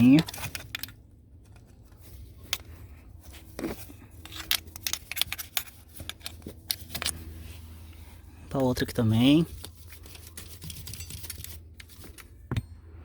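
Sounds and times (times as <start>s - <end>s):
brush scrubbing metal gear: 9.0s - 12.1s.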